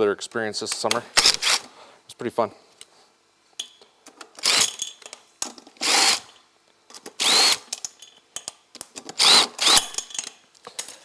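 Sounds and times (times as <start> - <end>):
clicks of tools and parts: 3.6 - 11.0
power tool whining: 5.8 - 6.3, 7.2 - 7.7, 9.2 - 10.0.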